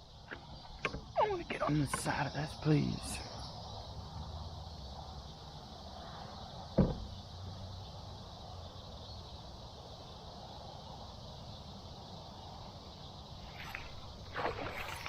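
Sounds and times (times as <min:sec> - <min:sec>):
faint outdoor background noise: 0:00.0 - 0:15.0
sharp thump: 0:06.8 - 0:07.1.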